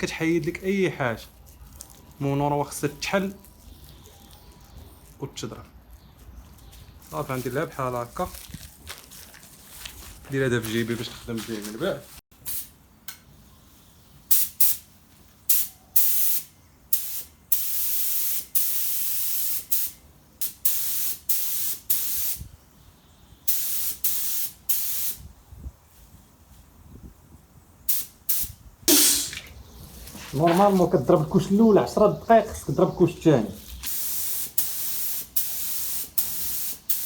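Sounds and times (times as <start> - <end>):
paint spray gun hissing: 27.9 - 29.6, 33.6 - 37.0.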